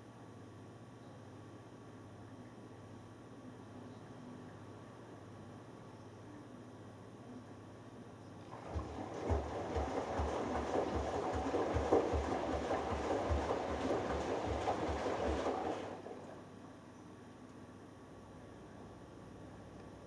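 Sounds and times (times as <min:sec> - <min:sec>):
washing machine drum sloshing: 0:08.4 - 0:16.4
washing machine drum thudding: 0:08.5 - 0:16.0.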